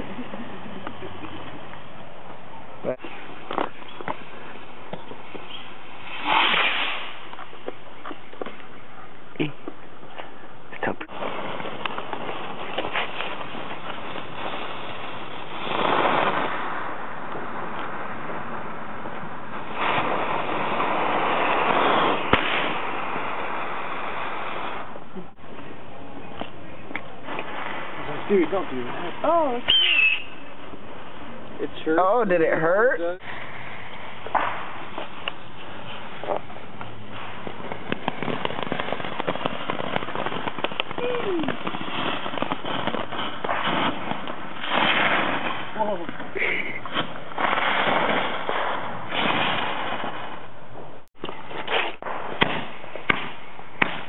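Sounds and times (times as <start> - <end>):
firework hissing rush: 5.4 - 7.4, 11.1 - 25.1, 27.2 - 31.2, 33.2 - 50.5
firework bang: 5.9 - 7.4, 11.1 - 18.4, 19.0 - 25.0, 33.2 - 50.5, 51.6 - 54.0.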